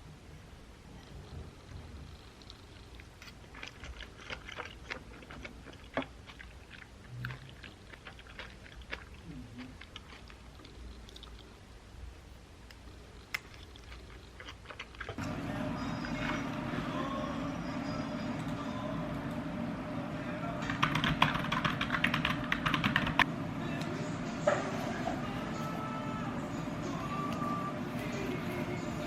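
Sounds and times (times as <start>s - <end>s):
chewing: 0.9s - 11.8s, 12.6s - 15.4s.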